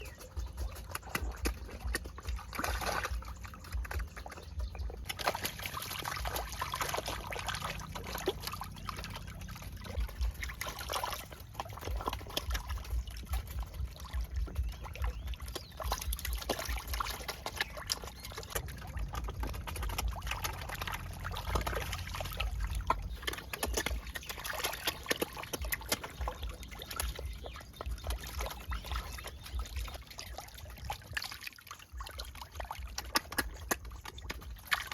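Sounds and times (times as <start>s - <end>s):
low rumble: 0.0s - 24.8s
water trickling: 0.0s - 34.9s.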